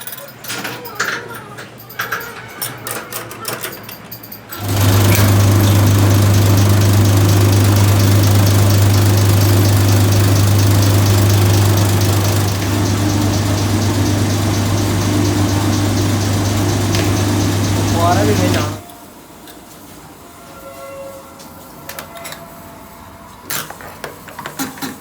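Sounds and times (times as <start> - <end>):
machine humming: 4.6 - 18.8.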